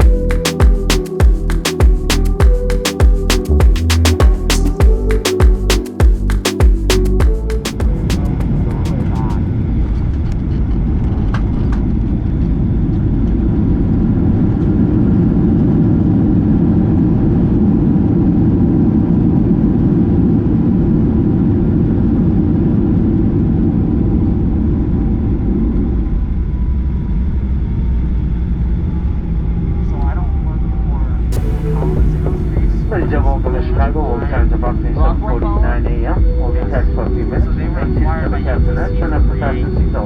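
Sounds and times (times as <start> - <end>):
airplane cabin engine rumble: 31.4 - 40.0.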